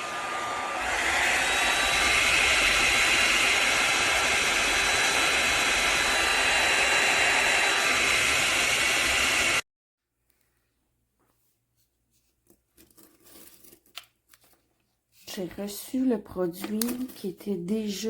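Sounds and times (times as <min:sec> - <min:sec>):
hair dryer brush blowing air: 0:00.0 - 0:09.6.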